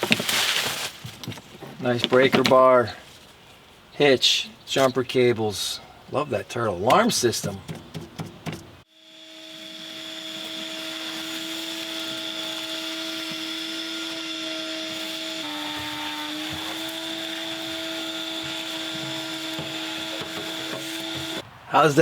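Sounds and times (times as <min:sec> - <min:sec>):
shop vacuum motor whine: 0:08.9 - 0:21.4.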